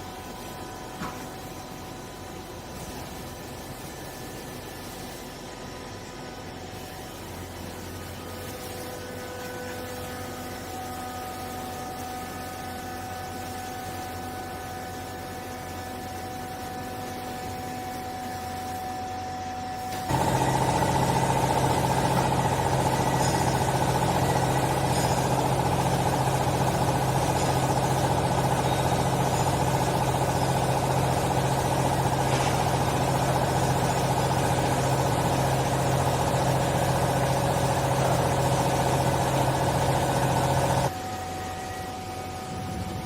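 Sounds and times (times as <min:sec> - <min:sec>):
hydraulic machine hum: 0:19.4 - 0:43.0.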